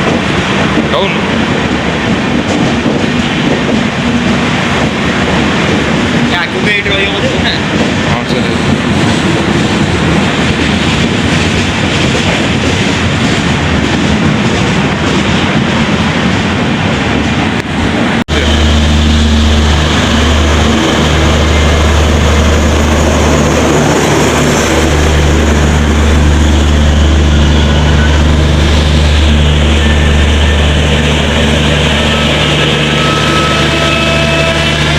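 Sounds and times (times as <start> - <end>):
train rumbling past: 0.0 - 34.9
deep engine hum: 18.2 - 34.9.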